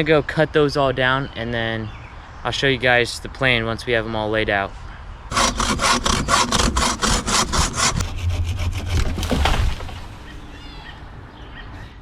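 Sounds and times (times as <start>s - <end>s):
hand saw cutting through log: 5.3s - 10.2s.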